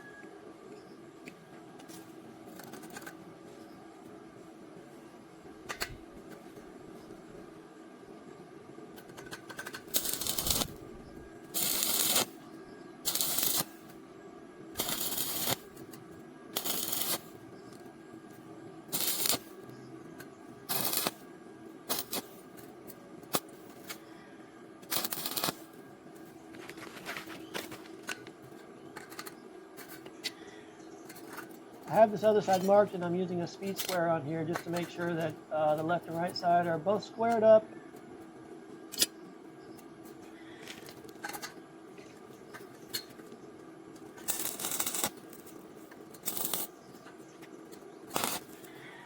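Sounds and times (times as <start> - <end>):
welding arc crackling: 9.0 - 12.4, 13.0 - 14.0, 14.7 - 17.8, 18.8 - 19.7, 20.6 - 24.0, 24.8 - 30.1, 43.9 - 48.8.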